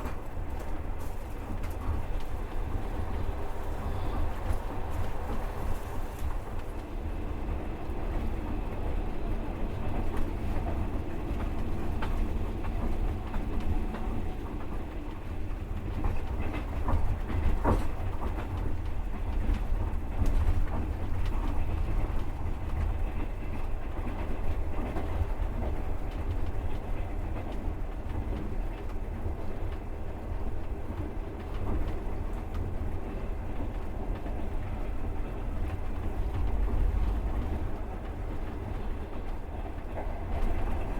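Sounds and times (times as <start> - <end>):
low train rumble: 0.0 - 40.9
train wheels clattering over joints: 9.6 - 40.9.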